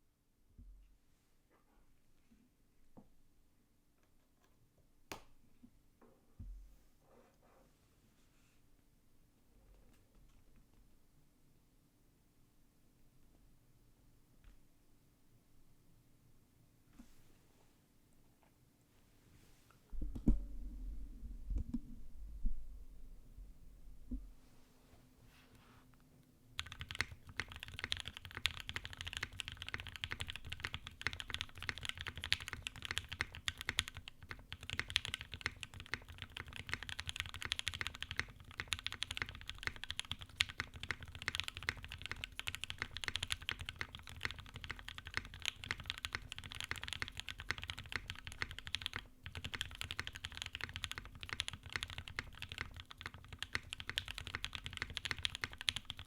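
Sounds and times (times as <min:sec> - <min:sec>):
mechanical keyboard typing: 0:26.6 - 0:56.0.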